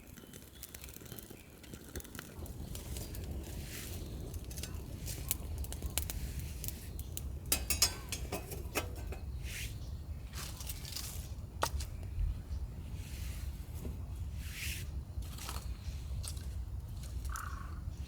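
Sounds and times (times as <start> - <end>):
cookware and utensils clicking: 7.5 - 9.3.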